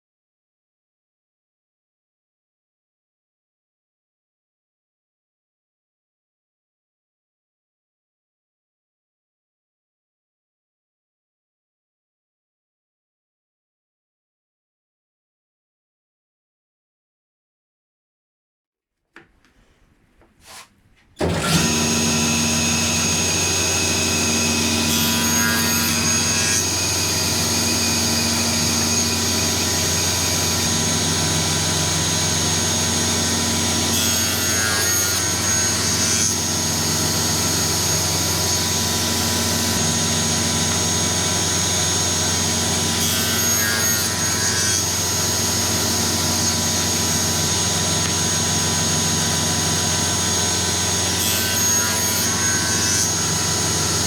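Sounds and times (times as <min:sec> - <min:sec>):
power saw motor running: 0:21.2 - 0:54.0.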